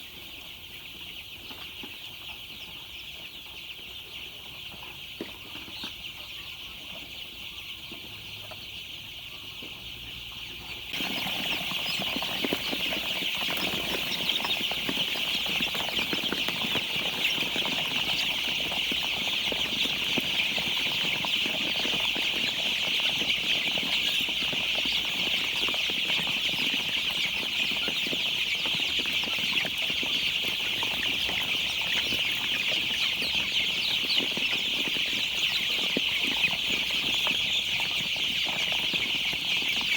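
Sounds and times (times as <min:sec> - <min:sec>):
chicks peeping: 0:00.0 - 0:39.9
wings flapping and rustling: 0:11.0 - 0:33.1.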